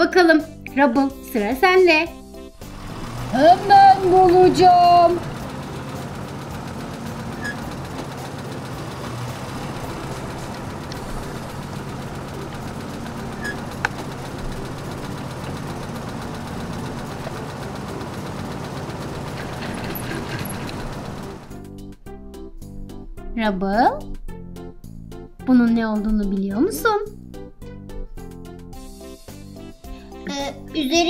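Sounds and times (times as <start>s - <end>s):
motor running: 2.2s - 21.8s.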